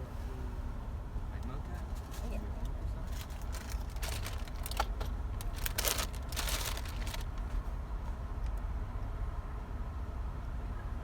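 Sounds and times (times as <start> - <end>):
clicks and rustles: 3.1 - 7.6
car engine idling: 3.2 - 7.6.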